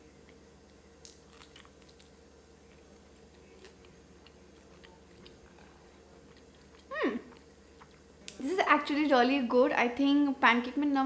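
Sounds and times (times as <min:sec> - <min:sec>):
faint chewing: 0:00.2 - 0:08.4.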